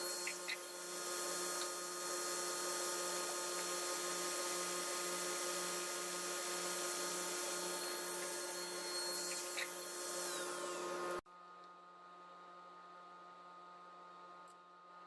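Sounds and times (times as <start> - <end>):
woodworking power tool running: 0.0 - 11.2.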